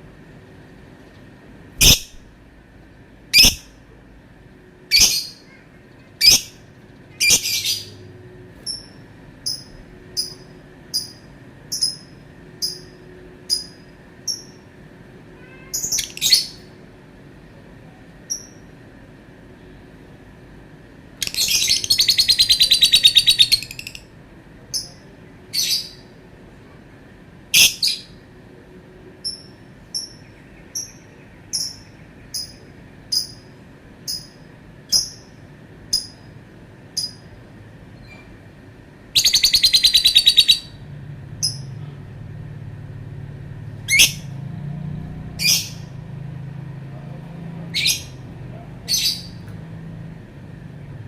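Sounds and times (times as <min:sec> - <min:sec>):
bird chattering trill: 0:01.8 - 0:02.2, 0:03.3 - 0:03.7, 0:04.9 - 0:08.1, 0:08.7 - 0:14.6, 0:15.5 - 0:16.6, 0:21.2 - 0:24.1, 0:29.2 - 0:33.4, 0:39.2 - 0:40.8, 0:43.9 - 0:44.3, 0:48.8 - 0:49.4
bird sharp chirps: 0:01.8 - 0:02.2, 0:03.4 - 0:03.7, 0:21.2 - 0:24.0, 0:39.2 - 0:40.8.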